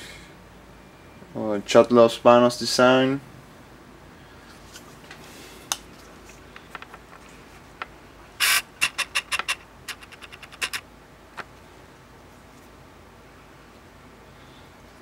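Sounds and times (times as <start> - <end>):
camera autofocus motor chirping: 8.4 - 10.8.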